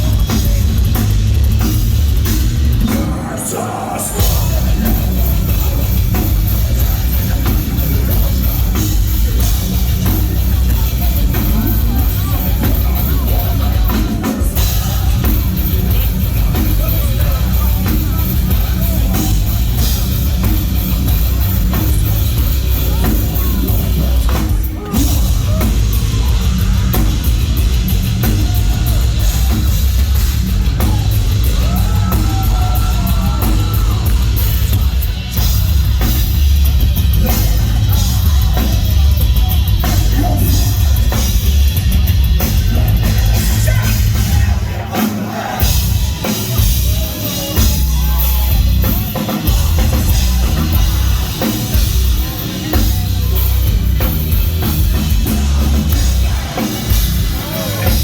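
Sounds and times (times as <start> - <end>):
heavy metal band playing live: 0.0 - 58.0
pounding drums: 0.0 - 58.0.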